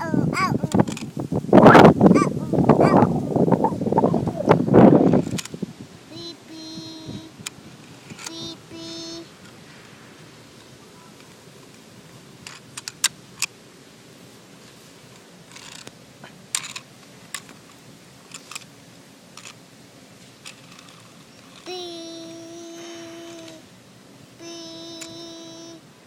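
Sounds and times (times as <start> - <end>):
brief rustle: 5.0 - 5.6, 7.4 - 8.4, 14.6 - 18.7, 20.2 - 21.7
sharp clicks: 5.1 - 5.6, 12.4 - 13.6, 18.3 - 18.7.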